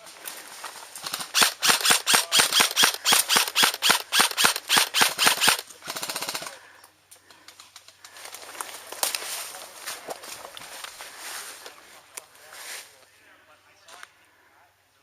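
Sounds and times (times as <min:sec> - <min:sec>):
airsoft gun firing: 0:01.0 - 0:06.6.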